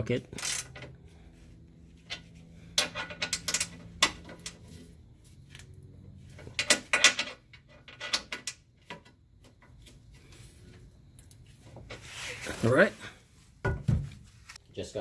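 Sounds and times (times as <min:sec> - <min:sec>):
metal wrench clicking: 0:00.4 - 0:00.8.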